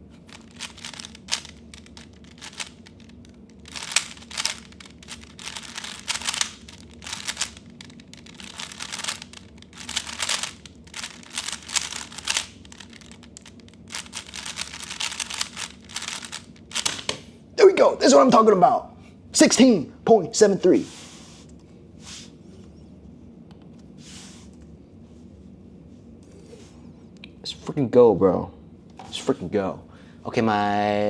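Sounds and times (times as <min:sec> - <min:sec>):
puzzle cube plastic clicking: 0:00.3 - 0:17.2.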